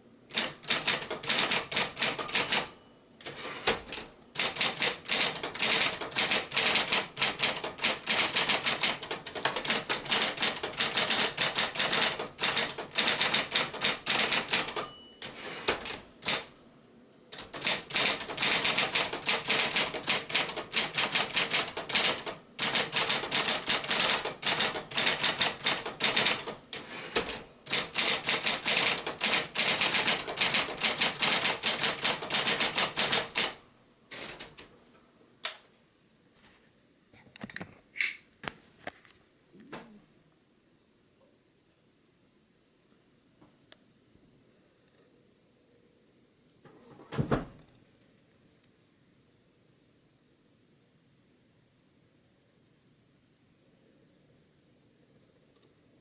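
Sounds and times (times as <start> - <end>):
electric typewriter key strikes: 0.3 - 16.5, 17.4 - 34.6
typewriter bell ringing: 0.4 - 3.7, 9.6 - 16.4.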